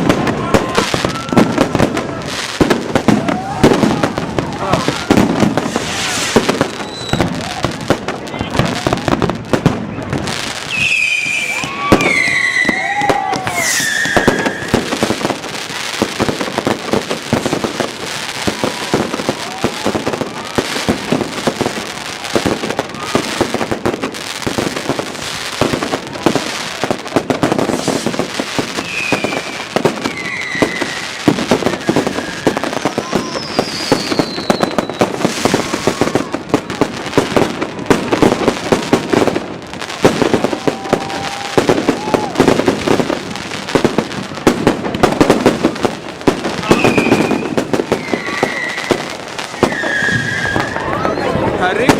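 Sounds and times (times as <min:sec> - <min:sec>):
fireworks crackling and banging: 0:00.0 - 0:51.9
firework whistles falling in pitch: 0:00.5 - 0:02.0, 0:03.1 - 0:07.6, 0:10.6 - 0:15.1, 0:27.6 - 0:36.3, 0:46.6 - 0:51.9.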